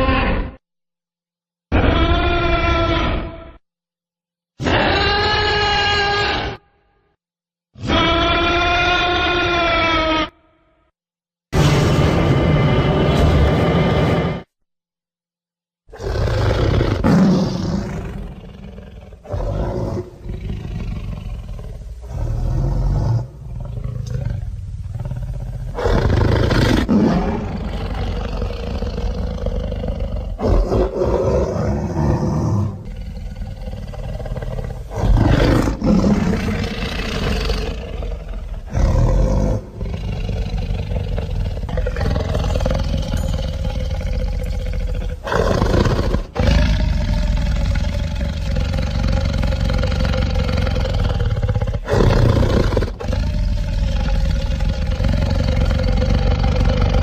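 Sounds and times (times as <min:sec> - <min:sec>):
deep dinosaur roars: 0:11.6 - 0:14.5, 0:15.9 - 0:57.0.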